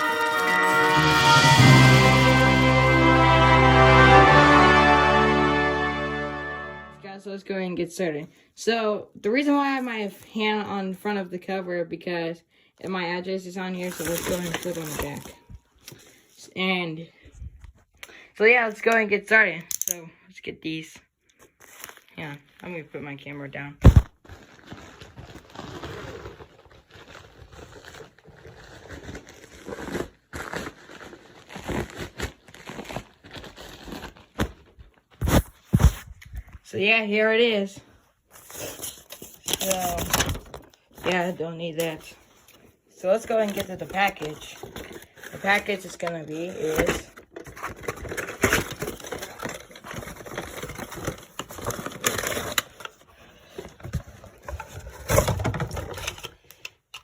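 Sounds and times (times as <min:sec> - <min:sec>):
packaging crinkling and tearing: 0:13.8 - 0:16.2, 0:21.4 - 0:22.6, 0:23.8 - 0:36.4, 0:38.3 - 0:56.6.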